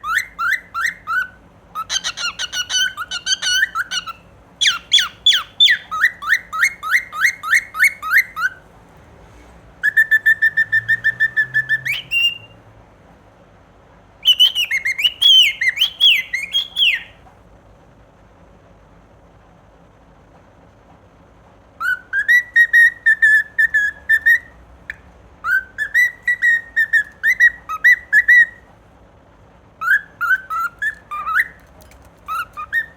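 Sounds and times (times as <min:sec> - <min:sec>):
cockatiel whistling: 0:00.0 - 0:08.6, 0:09.8 - 0:12.6, 0:14.2 - 0:17.2, 0:21.8 - 0:28.7, 0:29.8 - 0:32.9.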